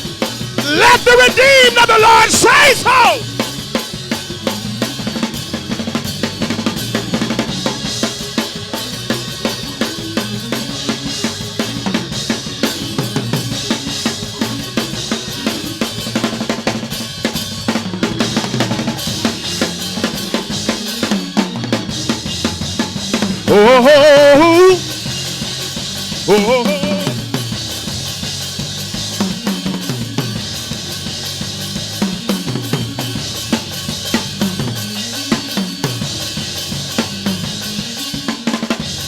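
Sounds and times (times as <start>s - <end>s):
live band playing: 0.0s - 39.0s
rapid snare and bass drum hits: 0.0s - 39.0s.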